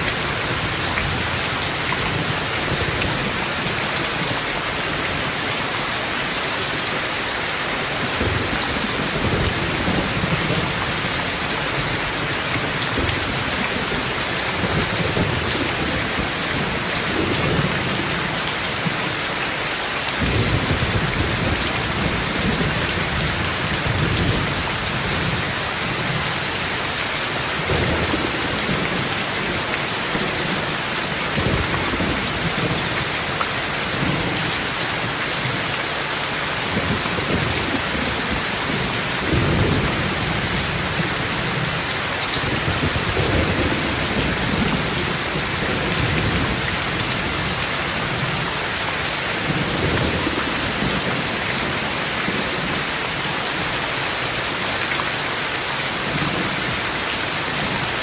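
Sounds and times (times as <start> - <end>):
steady rain: 0.0 - 58.0
thunder rumbling: 20.2 - 35.2, 36.7 - 48.4.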